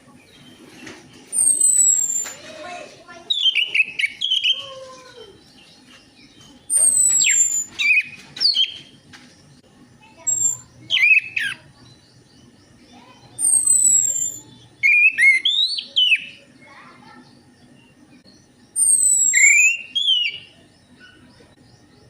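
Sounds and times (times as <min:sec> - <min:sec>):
thrush singing whistled phrases: 0:01.4 - 0:02.3, 0:03.3 - 0:04.6, 0:06.7 - 0:08.8, 0:10.2 - 0:11.7, 0:13.4 - 0:16.4, 0:18.8 - 0:20.6.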